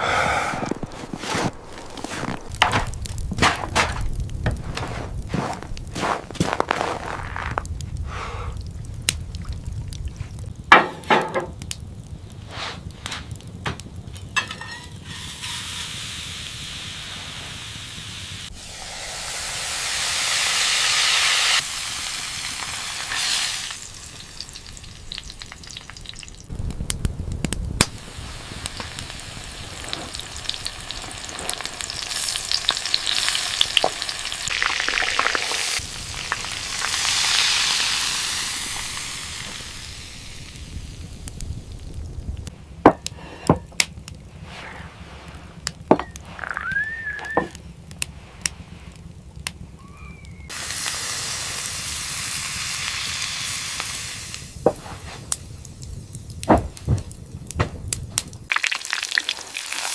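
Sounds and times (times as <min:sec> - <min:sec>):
food sizzling: 0:12.5 - 0:42.3, 0:45.8 - 0:47.6, 0:50.5 - 0:56.3, 0:58.1 - 0:59.9.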